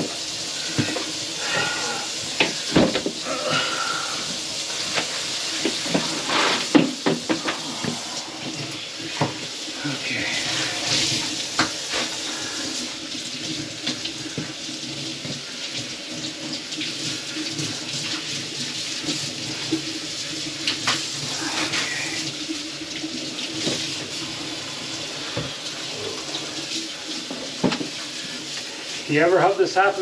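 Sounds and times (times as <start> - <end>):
faucet running into sink: 0.0 - 30.0.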